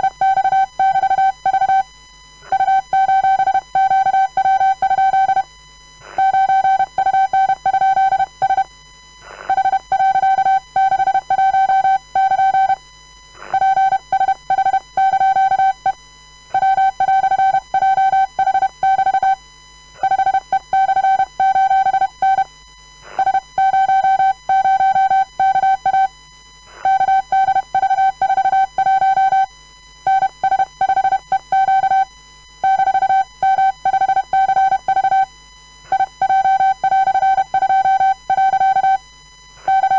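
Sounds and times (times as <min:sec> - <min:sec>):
morse code beeps: 0:09.5 - 0:12.8, 0:16.6 - 0:19.4, 0:20.0 - 0:22.5, 0:23.2 - 0:26.1, 0:26.8 - 0:29.5, 0:30.1 - 0:35.3, 0:35.9 - 0:39.0, 0:39.7 - 0:39.9.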